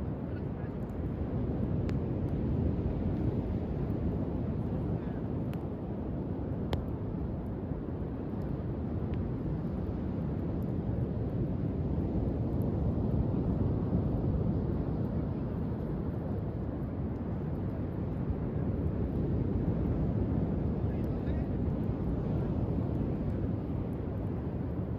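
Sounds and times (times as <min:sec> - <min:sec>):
faint light ticks: 0:06.7 - 0:07.6, 0:09.1 - 0:10.8.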